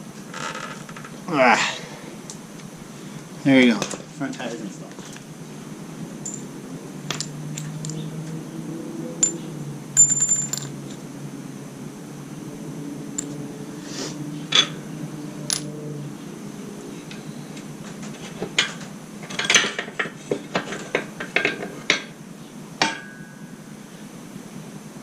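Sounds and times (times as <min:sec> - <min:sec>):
metal tools clinking: 0:06.2 - 0:06.5, 0:07.1 - 0:08.0, 0:09.2 - 0:10.9, 0:13.2 - 0:13.4, 0:14.5 - 0:14.8, 0:18.6 - 0:22.1.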